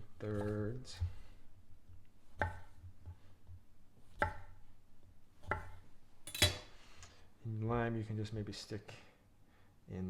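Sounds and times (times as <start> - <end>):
knife chopping on cutting board: 0.3 - 1.3, 2.3 - 3.2, 4.1 - 4.6, 5.4 - 5.8.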